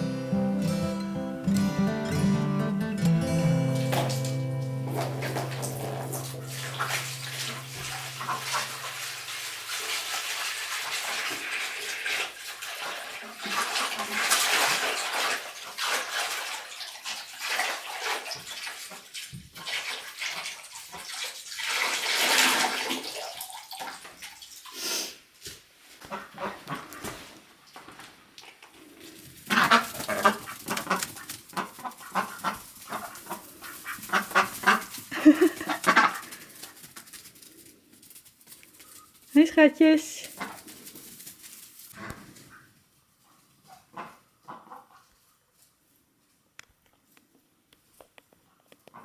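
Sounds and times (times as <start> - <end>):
guitar music: 0.0 - 9.6
running water splashing: 3.4 - 24.8.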